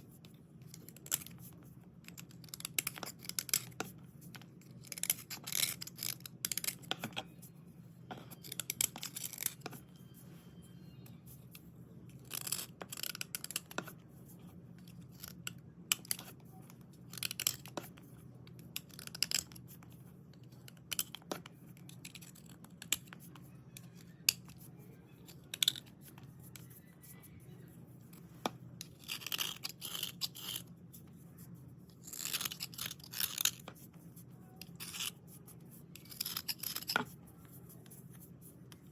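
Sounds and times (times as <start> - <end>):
slate pencils scraping: 22.0 - 38.8.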